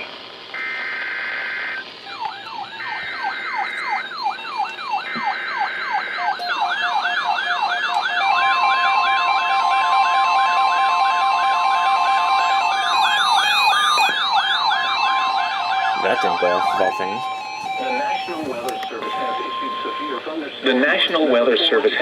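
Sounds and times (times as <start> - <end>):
electronic siren sweeps: 0.0 - 20.5
data tone bursts: 12.4 - 20.5.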